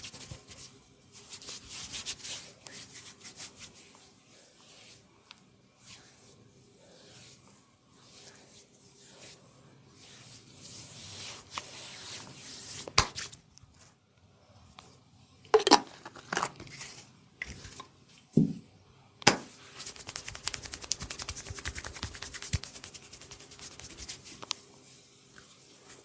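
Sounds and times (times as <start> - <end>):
hands rustling on skin and cloth: 0.0 - 13.9, 19.6 - 26.0.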